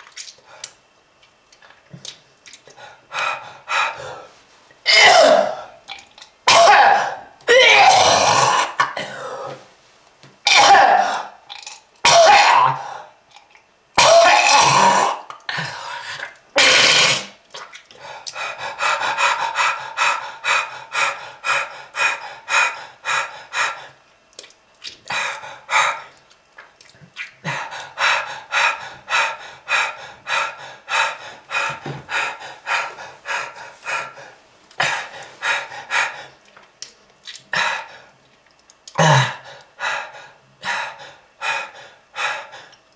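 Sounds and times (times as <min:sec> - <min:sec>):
person coughing harshly: 0:04.9 - 0:05.7, 0:06.5 - 0:09.6, 0:10.5 - 0:11.4, 0:12.0 - 0:12.8, 0:14.0 - 0:15.2, 0:16.6 - 0:17.3, 0:39.0 - 0:39.4.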